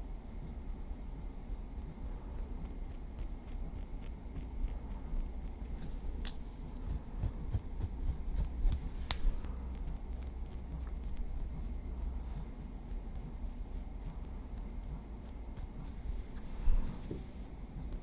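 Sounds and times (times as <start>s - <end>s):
low steady hum: 0.0s - 18.0s.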